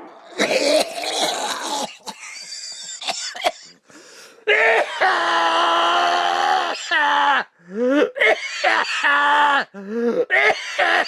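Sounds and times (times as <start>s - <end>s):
person coughing: 0.3s - 3.8s.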